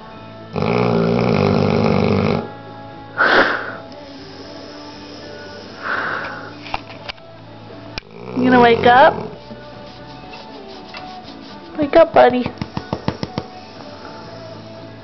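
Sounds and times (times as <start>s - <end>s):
dog snoring: 0.5s - 2.6s, 3.2s - 6.6s, 8.0s - 9.6s
dog breathing: 3.2s - 6.6s.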